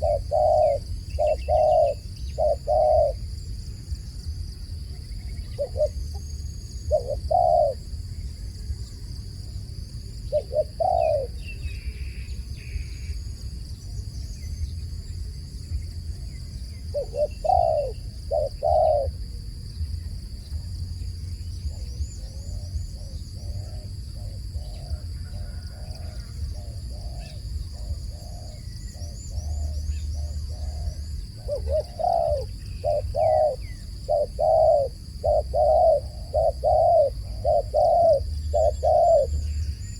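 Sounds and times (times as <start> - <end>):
small birds chirping: 0.0 - 3.2, 10.2 - 25.6, 26.6 - 39.9
dove cooing: 0.0 - 3.3, 5.3 - 7.9, 10.2 - 12.0, 16.8 - 19.4, 20.5 - 39.9.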